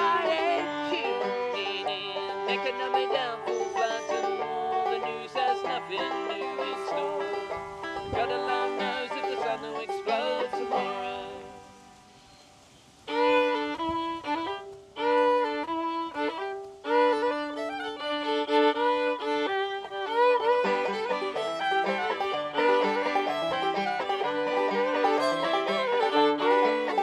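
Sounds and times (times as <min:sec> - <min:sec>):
fiddle melody: 0:00.0 - 0:27.0
lower accompanying notes: 0:13.1 - 0:27.0.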